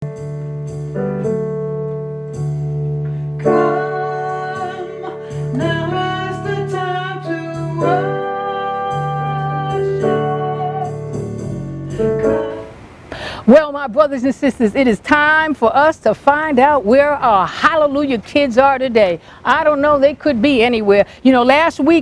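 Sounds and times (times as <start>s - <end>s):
instrumental accompaniment: 0.0s - 13.2s
person singing: 3.4s - 12.6s.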